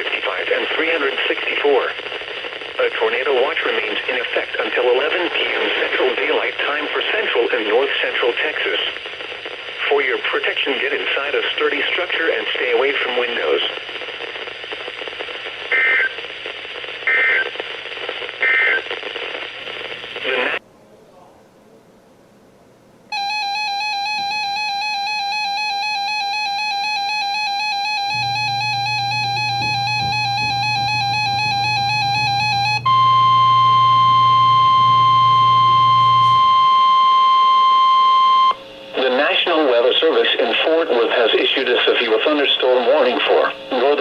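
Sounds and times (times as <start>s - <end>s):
radio static: 0.0s - 20.6s, 28.1s - 44.0s
faint low hum: 19.3s - 44.0s
steady alarm beep: 23.1s - 39.0s
buzzy digital data tones: 23.1s - 40.8s.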